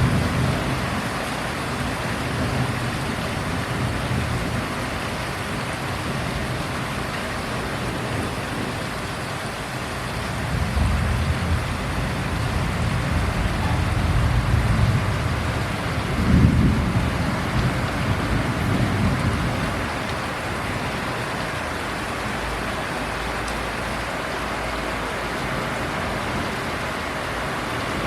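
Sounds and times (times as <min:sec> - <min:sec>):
thunder rumbling: 0:00.0 - 0:08.9, 0:10.1 - 0:22.0
heavy rain: 0:00.0 - 0:28.0.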